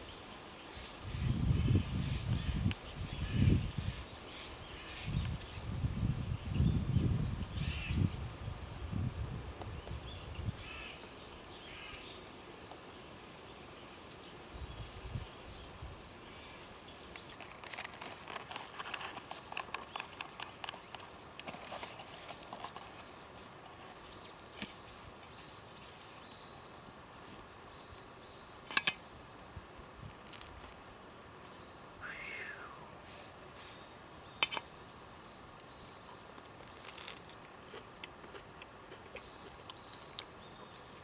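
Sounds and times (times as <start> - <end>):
crackly rustling and clicking: 17.0 - 27.4, 28.0 - 31.5, 35.3 - 41.0.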